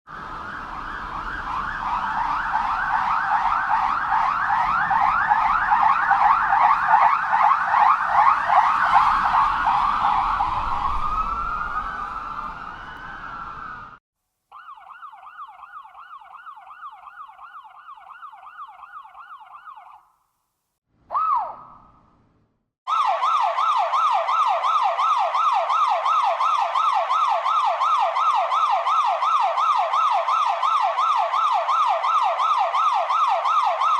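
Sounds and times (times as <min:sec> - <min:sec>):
road noise: 0:00.1 - 0:14.0
police siren yelp: 0:00.1 - 0:20.1, 0:21.1 - 0:21.8, 0:22.9 - 0:33.9
siren wail: 0:00.1 - 0:20.1, 0:22.9 - 0:33.9.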